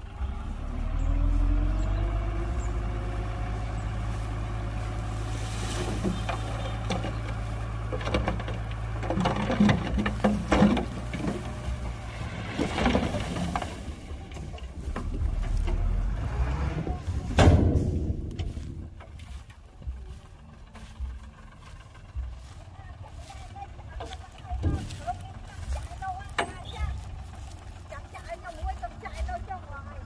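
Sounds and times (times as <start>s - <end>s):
heavy diesel engine running: 0.0s - 30.0s
metallic knocks and clanks: 5.8s - 16.0s, 17.1s - 19.6s.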